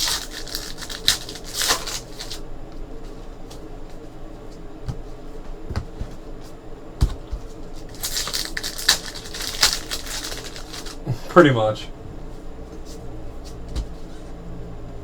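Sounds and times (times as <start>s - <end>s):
cards rustling and clicking: 0.0s - 2.4s, 7.8s - 11.0s.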